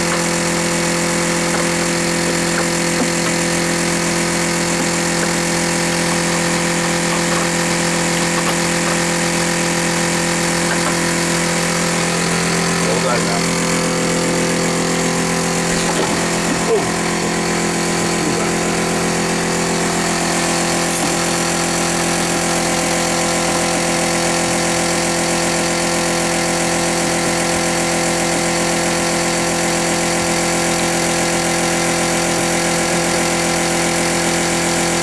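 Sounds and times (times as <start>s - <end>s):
engine droning: 0.0s - 23.0s.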